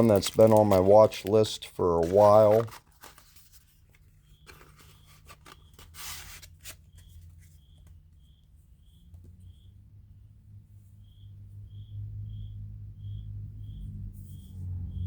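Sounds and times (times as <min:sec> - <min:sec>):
packaging rustle: 0:00.0 - 0:07.5.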